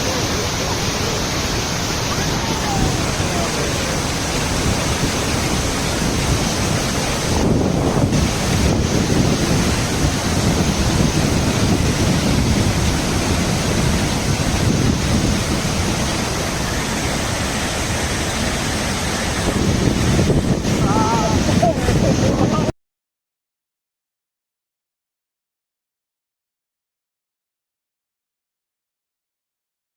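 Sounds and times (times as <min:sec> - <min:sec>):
water rushing in a loud torrent: 0:00.0 - 0:22.7.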